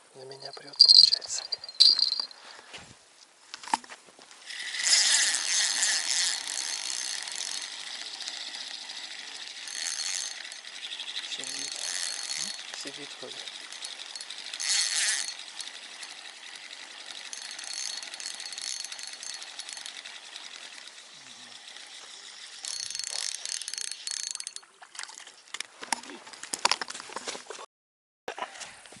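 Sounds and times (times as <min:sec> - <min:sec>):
fishing reel whirring: 0:00.3 - 0:02.4, 0:04.4 - 0:25.2.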